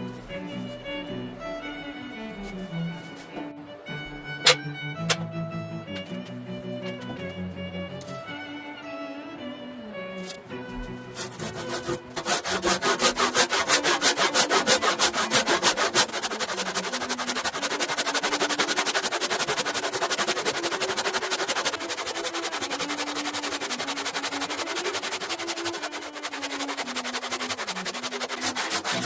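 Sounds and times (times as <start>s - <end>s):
hand tool strokes on wood: 10.2s - 29.0s.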